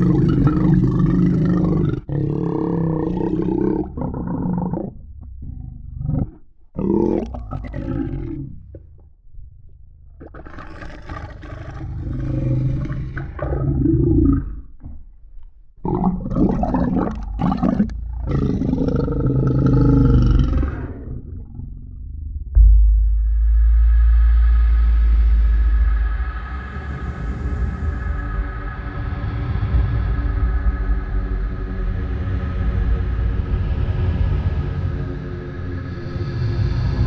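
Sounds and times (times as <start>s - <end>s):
monster growling roars: 0.0s - 8.6s, 10.3s - 14.6s, 15.9s - 21.5s.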